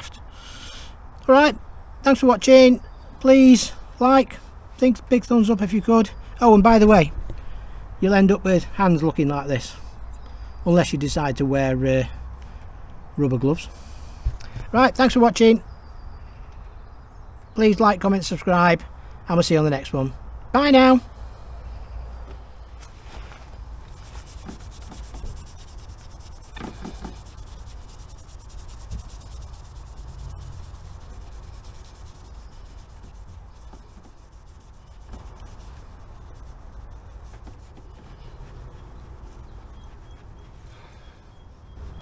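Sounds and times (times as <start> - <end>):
rubbing strokes on metal: 22.8 - 42.0.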